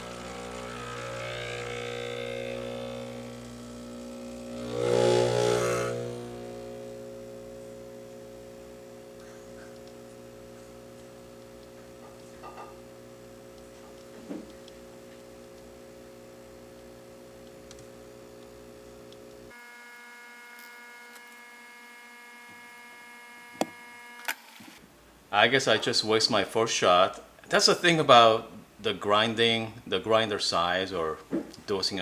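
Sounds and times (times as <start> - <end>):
espresso machine pump humming: 0.0 - 24.8.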